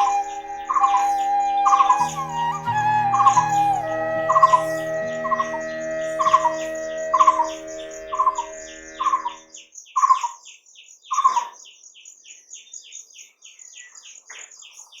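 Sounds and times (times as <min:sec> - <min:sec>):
held low tone: 0:00.0 - 0:09.5
high bird chirps: 0:00.0 - 0:09.6.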